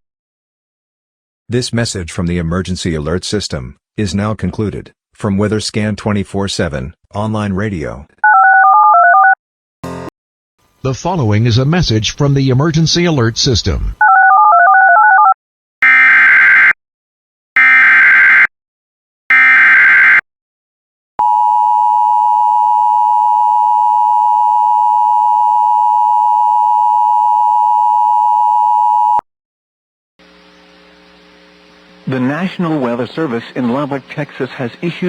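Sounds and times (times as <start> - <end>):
faint low hum: 30.3 - 35.0.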